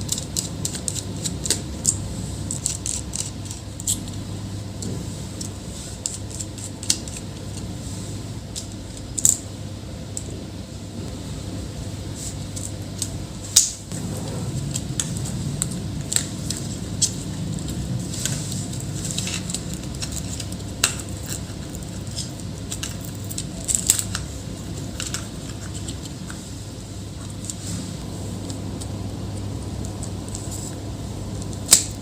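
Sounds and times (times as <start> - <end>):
small clicks and scratching: 0.0 - 4.2, 14.7 - 26.5
steady low hum: 0.0 - 32.0.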